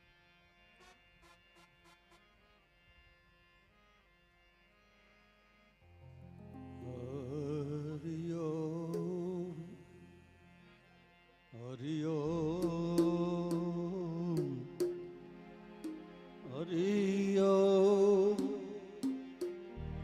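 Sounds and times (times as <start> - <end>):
devotional melody over a drone: 5.9 - 20.0.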